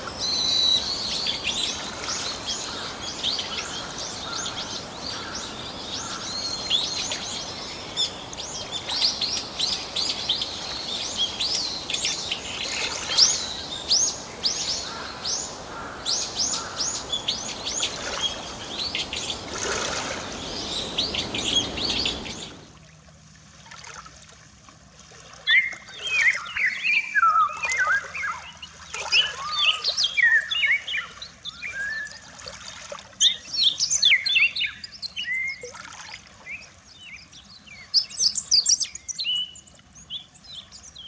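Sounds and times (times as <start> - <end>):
small birds chirping: 0.0 - 22.8, 36.5 - 41.0.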